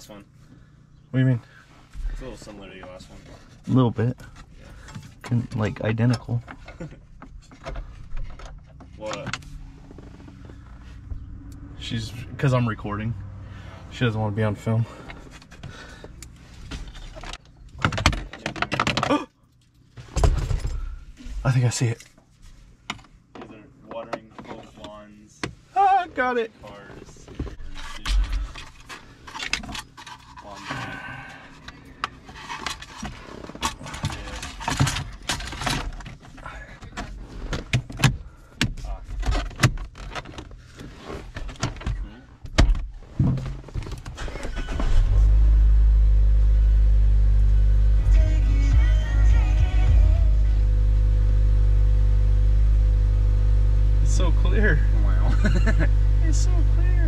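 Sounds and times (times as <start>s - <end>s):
handling noises inside a car: 2.9s - 11.3s, 15.0s - 30.9s, 31.5s - 49.9s.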